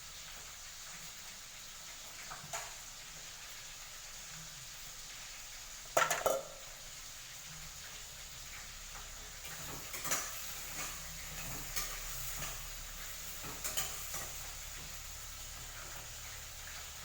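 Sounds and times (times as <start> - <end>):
faint steady hiss: 0.0 - 17.0
utensil clanking against pot: 6.0 - 6.6.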